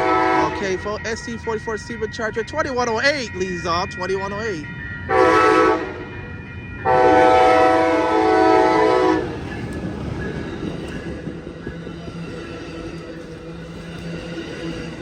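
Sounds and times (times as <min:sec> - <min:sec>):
locomotive air horn blast: 0:00.0 - 0:00.6, 0:05.1 - 0:06.0, 0:06.8 - 0:09.4
passenger train rumbling past: 0:00.0 - 0:15.0.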